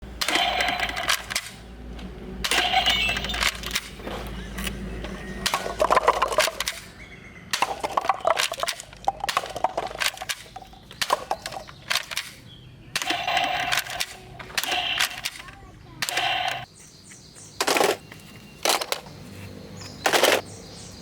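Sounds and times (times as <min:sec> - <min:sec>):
toy guns firing: 0:00.1 - 0:01.6, 0:02.4 - 0:04.4, 0:05.4 - 0:06.9, 0:07.5 - 0:16.7, 0:17.6 - 0:18.0, 0:20.1 - 0:20.4.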